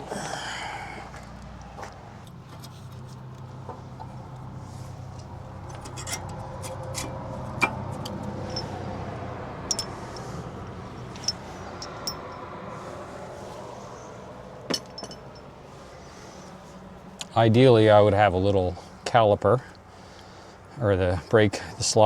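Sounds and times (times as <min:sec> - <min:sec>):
low hum: 0:00.0 - 0:17.5
metal parts and tools clinking: 0:05.6 - 0:08.8, 0:09.6 - 0:10.3, 0:11.0 - 0:12.5, 0:14.7 - 0:15.6.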